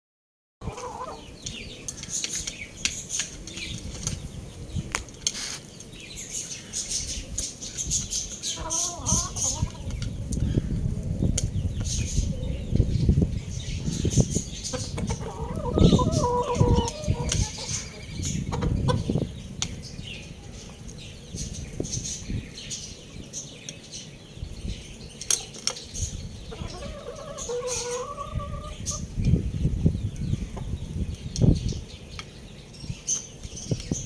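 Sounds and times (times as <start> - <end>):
chickens clucking: 0.6 - 4.2, 7.4 - 10.1, 13.7 - 19.3, 25.3 - 29.4
high chirping: 11.9 - 19.3
rooster crowing: 15.2 - 17.6.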